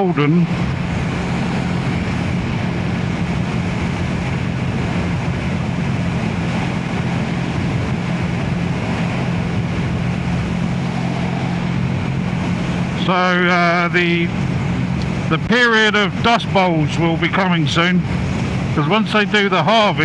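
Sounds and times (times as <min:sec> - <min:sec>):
motorcycle engine cruising: 0:00.0 - 0:15.4
wind and road noise: 0:00.0 - 0:20.0.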